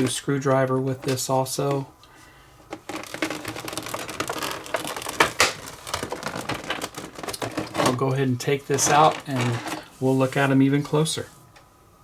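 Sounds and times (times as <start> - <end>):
plastic packaging crinkling: 2.7 - 10.4.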